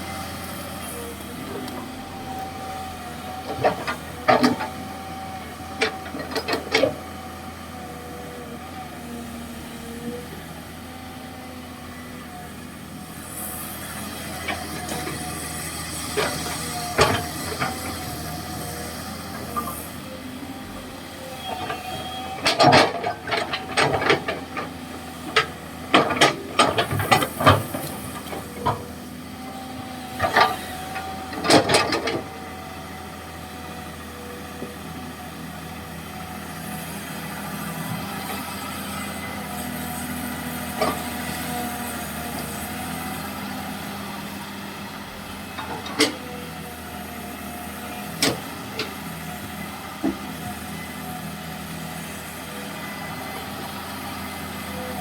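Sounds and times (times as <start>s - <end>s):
excavator running: 0.0s - 55.0s.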